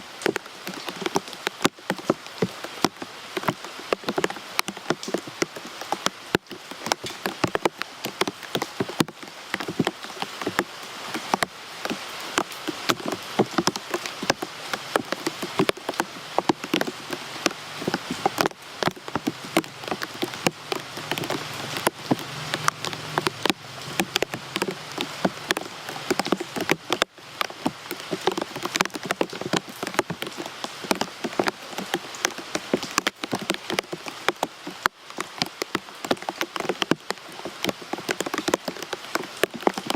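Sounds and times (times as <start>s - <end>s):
raindrops striking close by: 0.0s - 39.9s
steady rain hiss: 0.0s - 39.9s.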